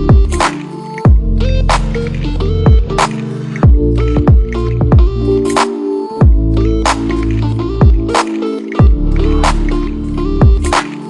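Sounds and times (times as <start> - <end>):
electronic beat music: 0.0 - 11.0
sharp clap: 0.4 - 1.1, 3.0 - 3.7, 6.8 - 9.9, 10.6 - 11.0
deep bass hits: 10.4 - 10.7.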